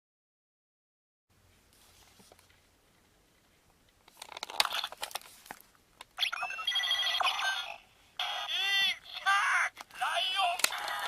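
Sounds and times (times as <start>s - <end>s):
toy electronic jingle: 6.2s - 7.8s
plastic toy clicks and rattles: 9.8s - 11.0s.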